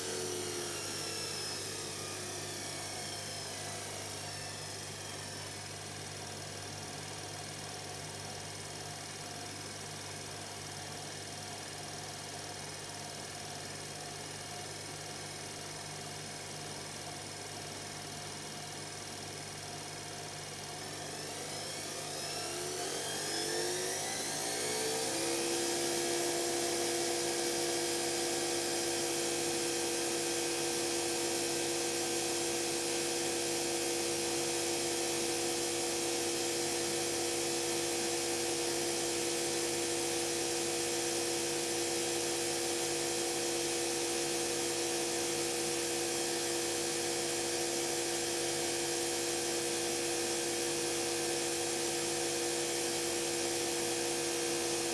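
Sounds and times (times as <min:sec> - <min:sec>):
washing machine motor whine: 0:00.0 - 0:06.6, 0:20.4 - 0:43.1, 0:44.0 - 0:54.9.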